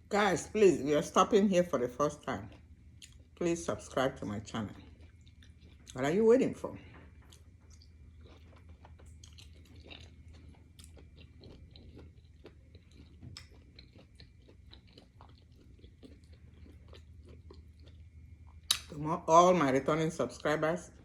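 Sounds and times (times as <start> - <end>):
person chewing wet mouth clicks: 7.3 - 19.0.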